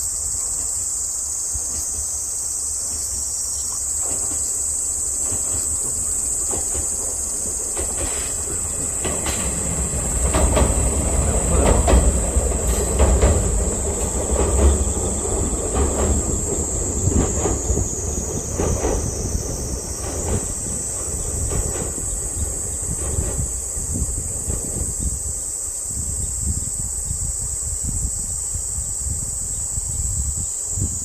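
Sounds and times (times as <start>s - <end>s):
high insect buzz: 0.0s - 31.0s
train wheels clacking on bridge: 1.5s - 25.4s.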